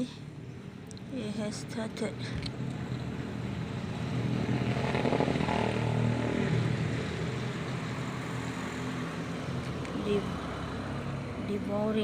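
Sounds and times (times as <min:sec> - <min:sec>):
motor engine passing by: 0:02.6 - 0:12.0.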